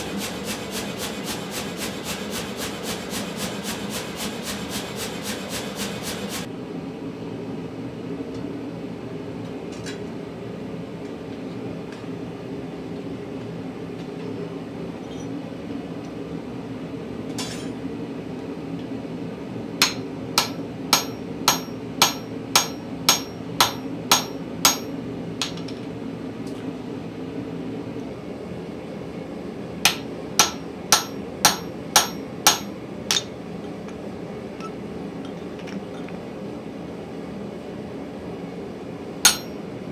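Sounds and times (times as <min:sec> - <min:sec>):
hammer striking steel: 0:19.8 - 0:25.8, 0:29.9 - 0:34.0, 0:39.3 - 0:39.6.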